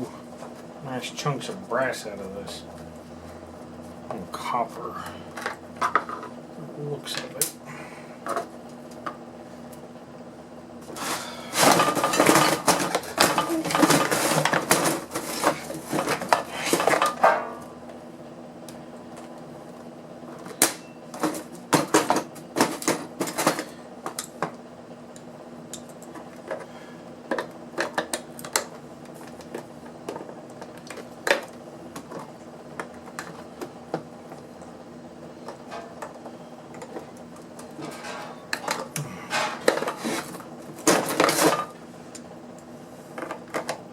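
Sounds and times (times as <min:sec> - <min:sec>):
faint steady hum: 0:00.0 - 0:43.9
metal parts and tools clattering: 0:37.8 - 0:40.3.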